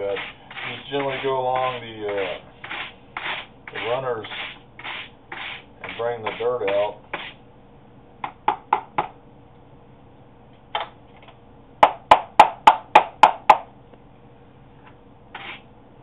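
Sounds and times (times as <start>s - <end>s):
brush scrubbing filter: 0.0s - 7.4s.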